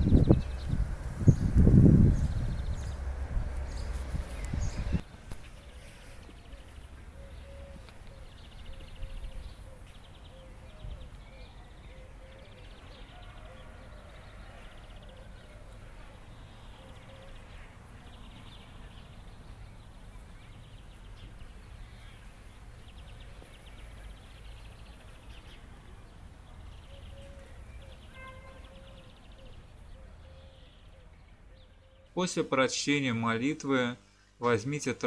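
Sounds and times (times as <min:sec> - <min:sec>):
low rumble: 0:00.0 - 0:05.0
birds trilling and chirping: 0:00.0 - 0:32.4.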